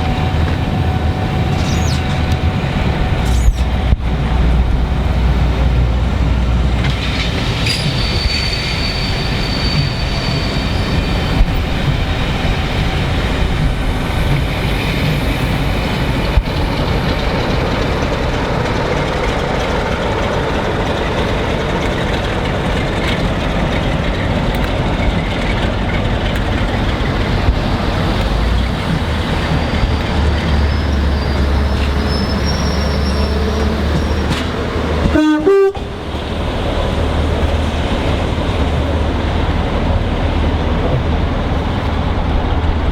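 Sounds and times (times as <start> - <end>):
high-pitched wheel squeal: 0.0 - 2.6, 7.4 - 11.8, 29.4 - 34.4
train rumbling past: 0.0 - 42.9.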